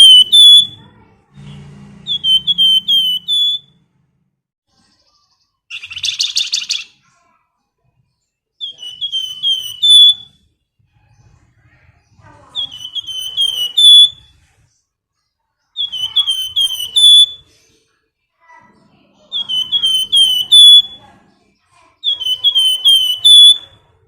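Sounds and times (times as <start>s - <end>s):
buzzy bird trill: 0.0s - 3.8s, 4.9s - 7.1s, 8.6s - 14.5s, 15.7s - 17.8s, 19.1s - 21.1s, 21.9s - 24.0s
songbird whistling clear notes: 2.0s - 3.8s, 8.6s - 10.4s, 12.6s - 14.3s, 15.8s - 17.6s, 19.3s - 21.0s, 22.1s - 23.8s.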